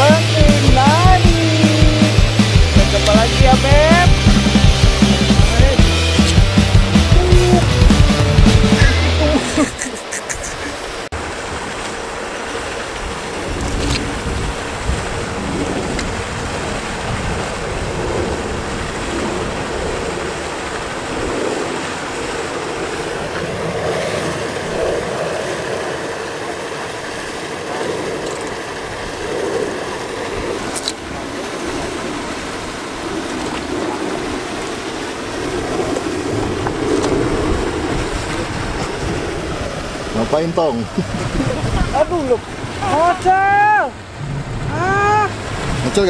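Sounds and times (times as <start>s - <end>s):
sea water washing on shore: 0.0s - 46.0s
wind blowing across microphone: 12.7s - 46.0s.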